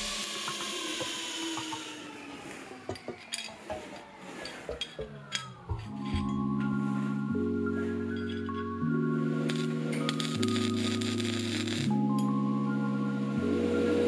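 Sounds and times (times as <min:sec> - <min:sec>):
background music: 0:03.3 - 0:14.0
metal pieces clinking and scraping: 0:04.8 - 0:06.4, 0:08.1 - 0:08.8.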